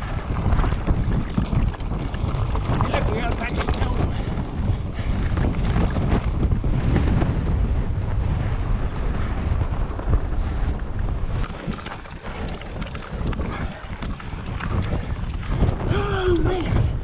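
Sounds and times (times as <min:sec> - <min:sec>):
bike tyres rolling on gravel: 0:00.0 - 0:17.0
wind buffeting microphone: 0:00.0 - 0:17.0.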